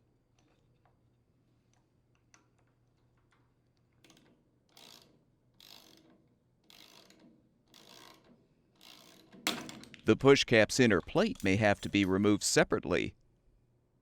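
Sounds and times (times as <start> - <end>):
ratchet wrench ratcheting: 4.0 - 9.4.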